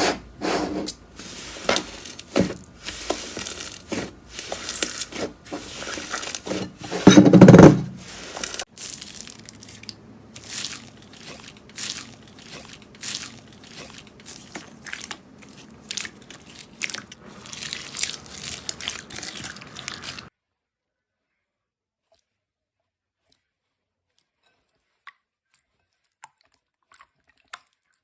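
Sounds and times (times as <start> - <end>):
slime crackling and popping: 8.0 - 20.3.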